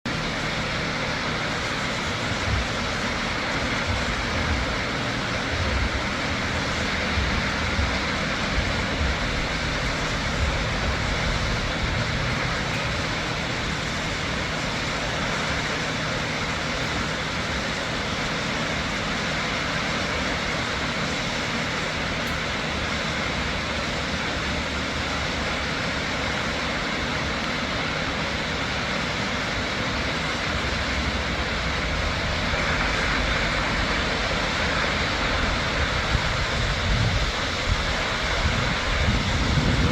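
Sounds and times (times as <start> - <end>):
low rumbles: 0.1 - 18.4
waterfall rushing: 0.1 - 39.9.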